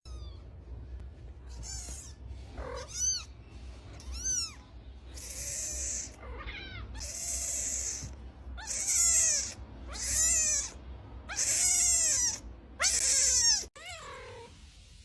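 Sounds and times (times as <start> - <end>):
kittens meowing: 1.5 - 3.4, 4.0 - 14.5.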